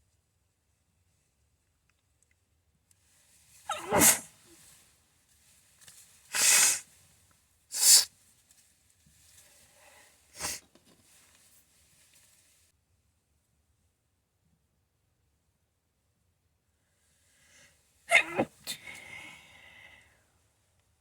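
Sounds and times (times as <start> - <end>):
person sneezing: 3.7 - 4.3, 6.3 - 6.8, 7.7 - 8.1, 10.4 - 10.6, 18.1 - 19.4
faint breaths drawn in: 9.2 - 10.7, 18.7 - 20.3.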